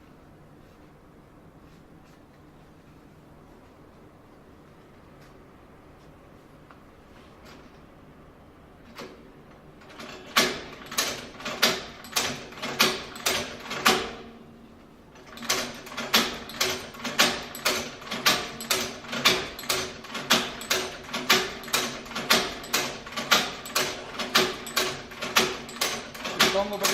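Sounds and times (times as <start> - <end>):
stitching machine clacking: 9.8 - 14.2, 15.2 - 26.9.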